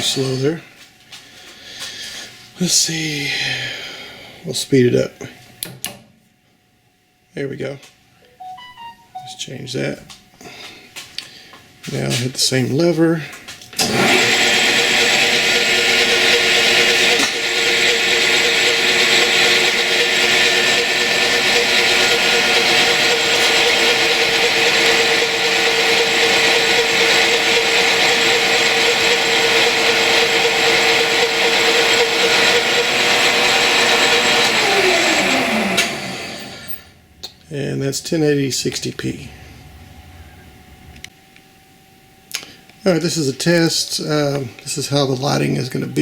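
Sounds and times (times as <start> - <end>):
machine tool whine winding down: 13.8 - 37.0.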